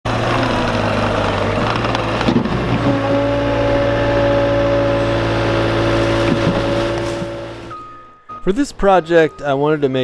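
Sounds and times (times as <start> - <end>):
diesel engine running: 0.0 - 8.0.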